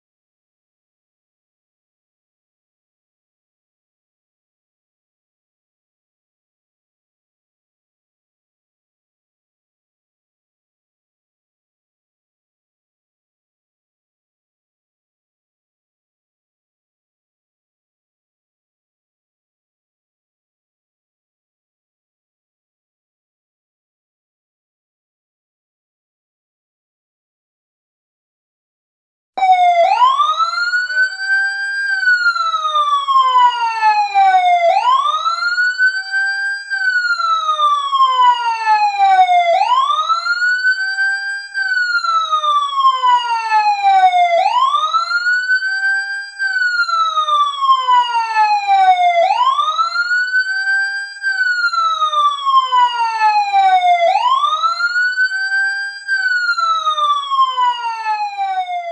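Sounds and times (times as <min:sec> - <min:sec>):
fire truck siren wailing: 0:29.4 - 0:58.9.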